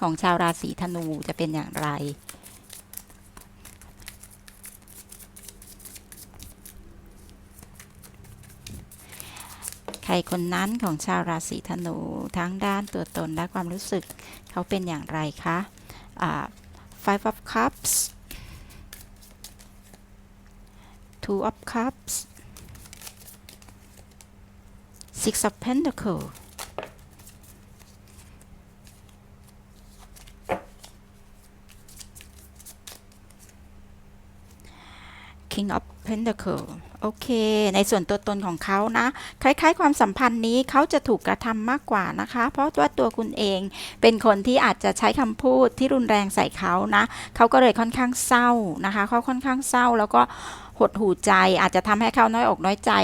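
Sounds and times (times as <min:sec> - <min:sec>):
faint steady hum: 0:00.0 - 0:53.0
cards shuffling and clicking: 0:00.8 - 0:11.0, 0:12.2 - 0:14.7, 0:18.1 - 0:20.0, 0:22.2 - 0:24.3, 0:26.1 - 0:33.6.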